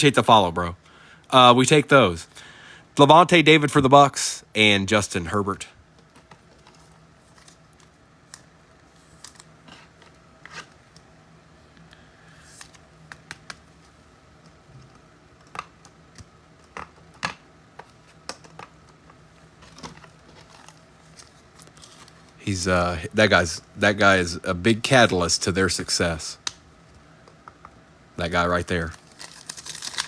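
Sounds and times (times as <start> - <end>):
faint low hum: 0.0 - 30.0
trading cards being handled: 5.9 - 11.1, 11.9 - 22.7, 28.4 - 30.0.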